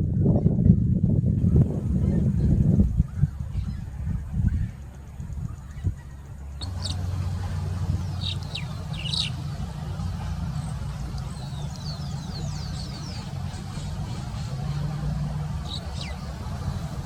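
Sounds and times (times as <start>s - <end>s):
steady low hum: 0.0s - 17.0s
songbird chirping and whistling: 6.6s - 9.6s, 15.6s - 17.0s.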